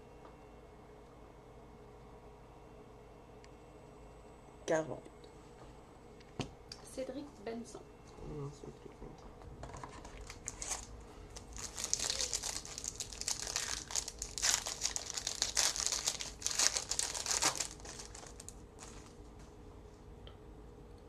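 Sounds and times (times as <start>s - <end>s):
wrapper crinkling and tearing: 9.9s - 19.2s.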